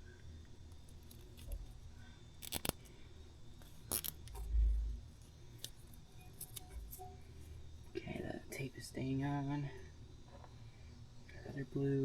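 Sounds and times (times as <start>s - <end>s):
zip tie clicks and rasp: 2.4s - 2.9s, 3.6s - 4.4s.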